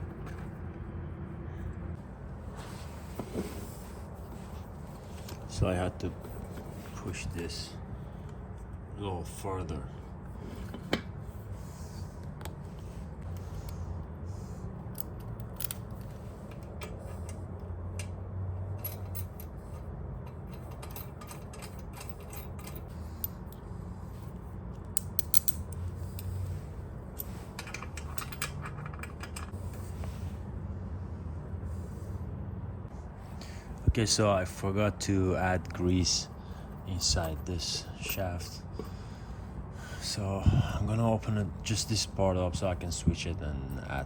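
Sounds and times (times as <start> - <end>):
metallic clicks and scrapes: 18.8 - 23.6, 24.2 - 30.2.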